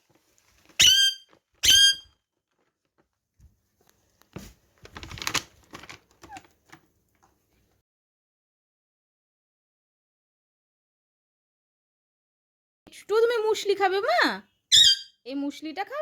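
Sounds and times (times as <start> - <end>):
parakeet squawks: 0.8 - 2.1, 14.7 - 15.2.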